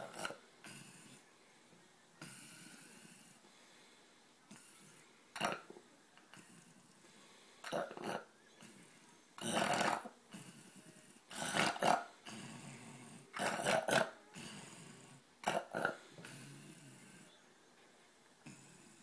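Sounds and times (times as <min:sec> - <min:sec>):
soft breath: 0:00.5 - 0:05.3, 0:06.3 - 0:07.7.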